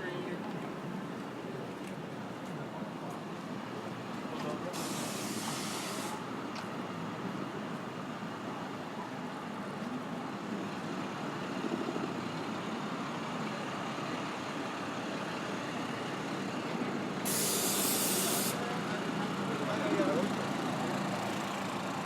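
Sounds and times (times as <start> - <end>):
city street traffic: 0.0 - 22.0
air brakes hissing: 4.7 - 6.3, 17.2 - 18.7.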